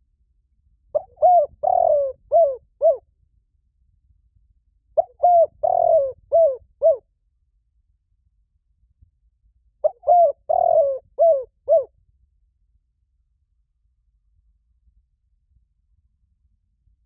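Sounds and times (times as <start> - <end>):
dove cooing: 1.0 - 3.0, 5.0 - 7.0, 9.8 - 11.9.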